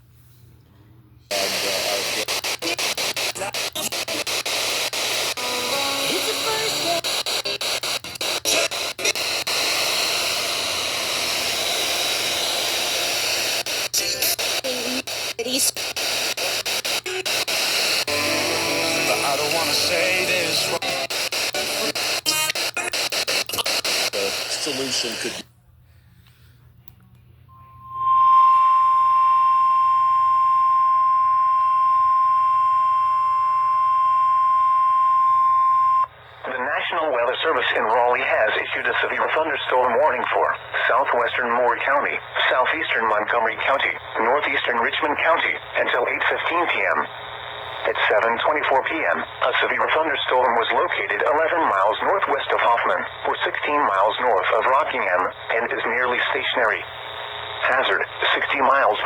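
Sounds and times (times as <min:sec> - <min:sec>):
radio static hiss: 0:01.3 - 0:25.5, 0:36.0 - 0:59.0
steady alarm tone: 0:18.1 - 0:22.6, 0:27.5 - 0:36.1.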